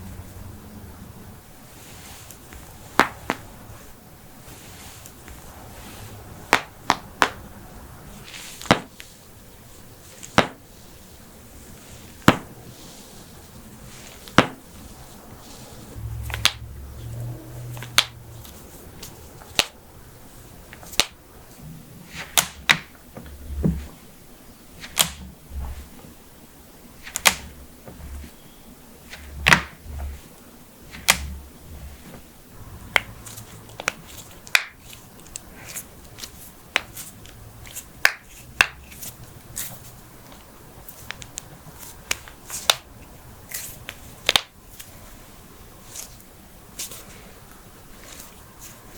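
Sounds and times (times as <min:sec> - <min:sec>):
low muffled handling rumble: 0:15.8 - 0:19.0.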